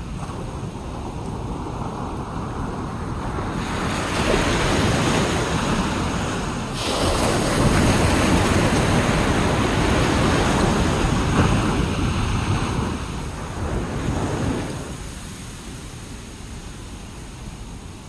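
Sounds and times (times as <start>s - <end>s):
wind on microphone: 0.0s - 18.0s
ocean waves breaking: 1.4s - 17.8s.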